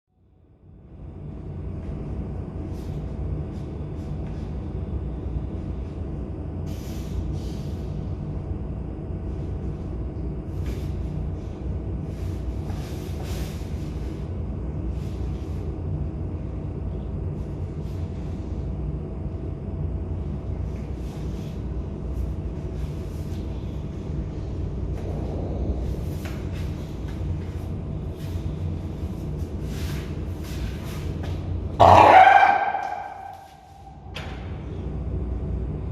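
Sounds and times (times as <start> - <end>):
low machine hum: 0.1 - 35.9.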